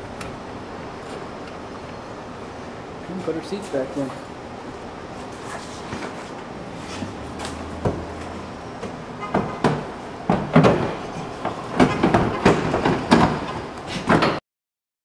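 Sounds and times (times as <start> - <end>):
seats knocking and clunking: 6.9 - 14.4.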